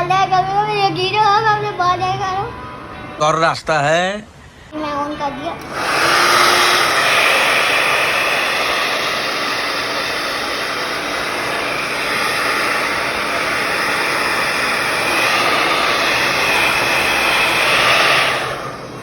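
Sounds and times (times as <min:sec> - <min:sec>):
hair dryer blowing air: 0:05.5 - 0:19.0.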